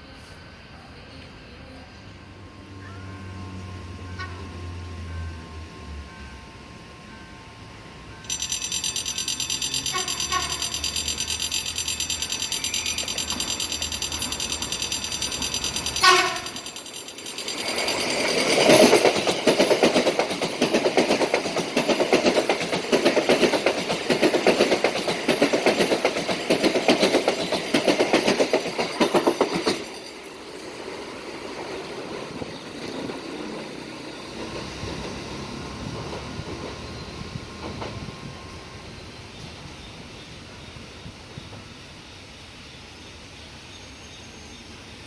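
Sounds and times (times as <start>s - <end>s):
train wheels clattering: 8.2s - 41.8s.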